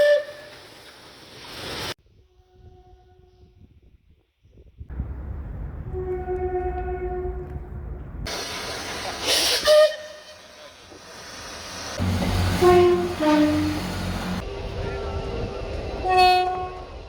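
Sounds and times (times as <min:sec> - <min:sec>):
train horn: 0:02.2 - 0:03.6, 0:05.9 - 0:07.6, 0:09.6 - 0:10.4, 0:12.0 - 0:17.0
hissing rush: 0:08.3 - 0:15.7
low engine rumble: 0:10.5 - 0:17.0.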